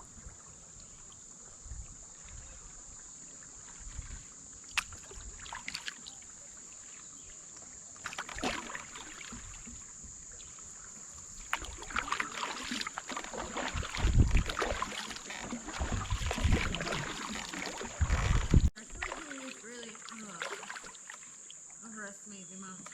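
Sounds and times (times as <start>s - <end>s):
paddle strokes in water: 0.0s - 21.6s
heavy low thuds: 18.0s - 18.7s.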